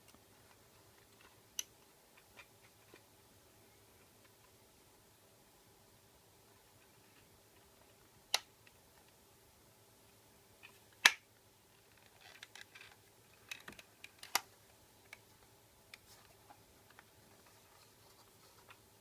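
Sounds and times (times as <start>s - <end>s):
rustling handling sounds: 11.6s - 19.0s.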